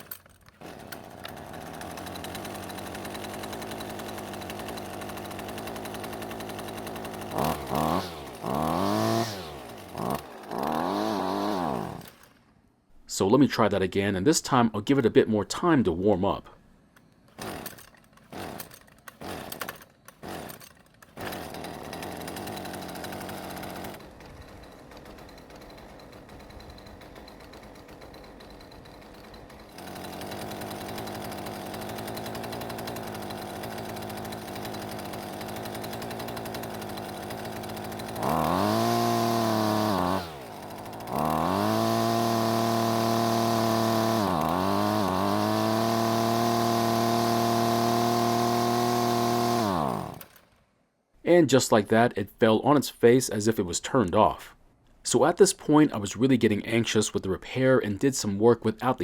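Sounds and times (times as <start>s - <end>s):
string trimmer engine revving: 0.0s - 12.3s, 17.3s - 50.6s.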